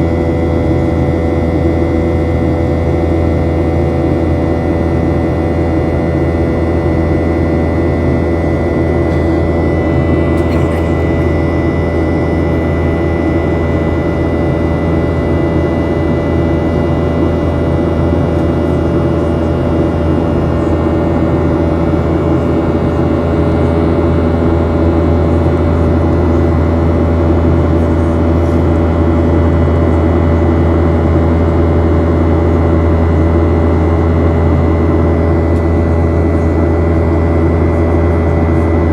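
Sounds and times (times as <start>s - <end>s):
jet engines droning: 0.0s - 38.9s
high engine tone: 6.0s - 27.2s.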